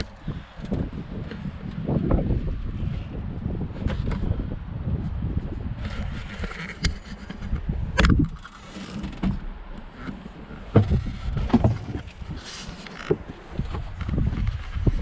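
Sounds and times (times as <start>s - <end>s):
low rumbling noise: 0.0s - 15.0s
sharp knocks and thumps: 5.8s - 12.3s.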